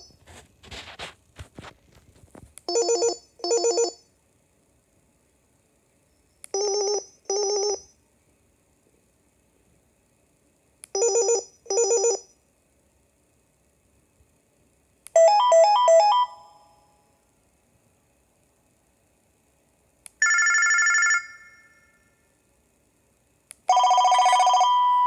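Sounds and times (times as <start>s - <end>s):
warbling electronic phone ring: 2.7s - 4.0s, 6.6s - 7.9s, 11.0s - 12.3s, 20.2s - 22.0s, 23.7s - 25.0s.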